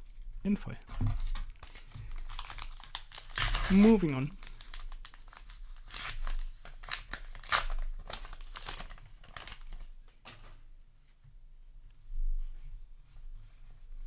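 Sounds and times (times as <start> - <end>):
wrapper crinkling and tearing: 1.2 - 10.5.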